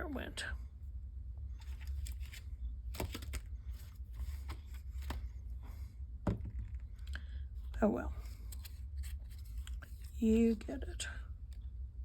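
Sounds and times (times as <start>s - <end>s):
steady low hum: 0.0s - 12.0s
paper rustling and tapping: 1.8s - 3.5s.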